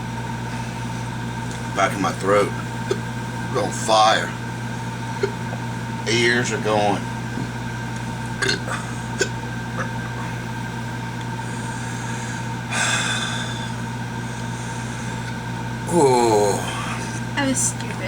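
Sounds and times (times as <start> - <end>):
room hum: 0.0 - 18.0
man breathing out hard: 11.6 - 13.8.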